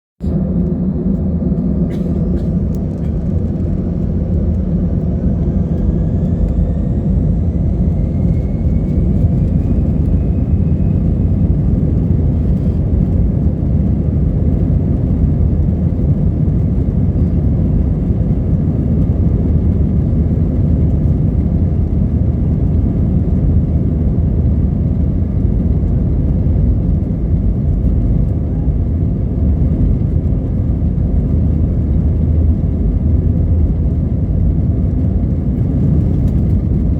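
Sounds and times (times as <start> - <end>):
jet engines rumbling: 0.2 - 36.9.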